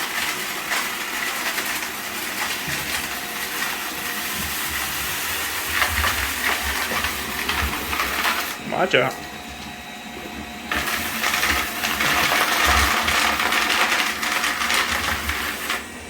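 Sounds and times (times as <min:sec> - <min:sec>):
robot vacuum whirring: 0:00.0 - 0:16.0.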